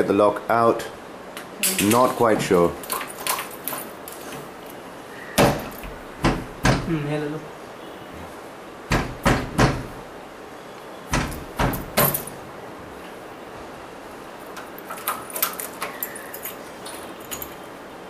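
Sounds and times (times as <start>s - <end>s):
metallic clicks and rattles: 14.5s - 17.7s.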